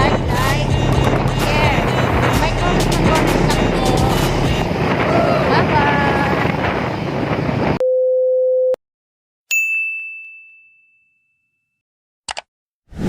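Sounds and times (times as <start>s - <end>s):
dense mixed sound: 0.0s - 5.5s
bright ding: 9.5s - 11.8s.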